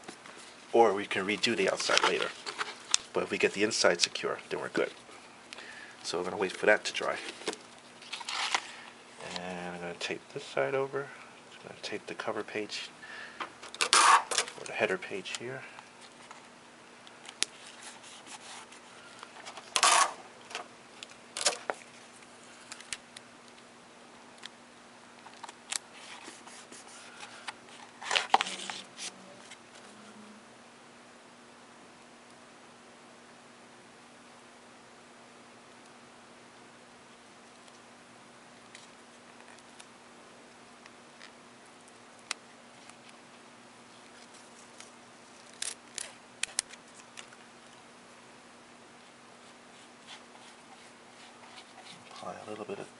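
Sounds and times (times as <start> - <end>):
tape and paper rustling: 0.0 - 5.0, 6.2 - 9.5, 13.6 - 15.4, 17.2 - 23.0, 25.2 - 29.9, 43.9 - 47.8, 49.4 - 52.9
small clicks and snips: 44.1 - 47.8.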